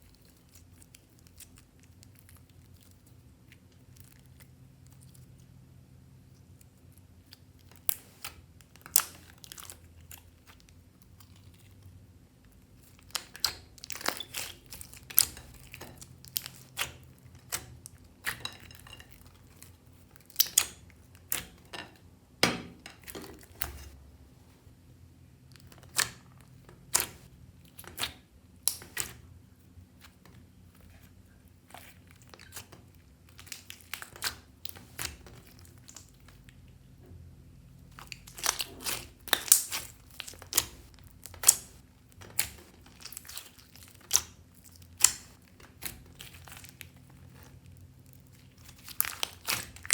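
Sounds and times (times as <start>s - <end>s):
faint steady hum: 0.0s - 49.9s
slime popping and crackling: 37.9s - 47.4s, 48.1s - 49.9s.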